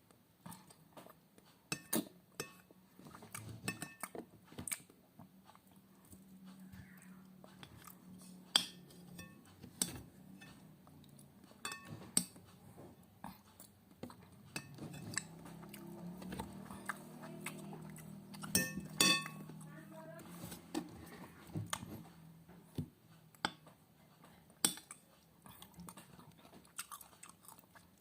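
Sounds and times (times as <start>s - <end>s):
metal spoon clinking on plate: 1.8s - 2.7s, 8.5s - 10.6s, 11.6s - 12.4s, 18.5s - 19.5s
chewing: 2.9s - 19.8s, 24.2s - 28.0s.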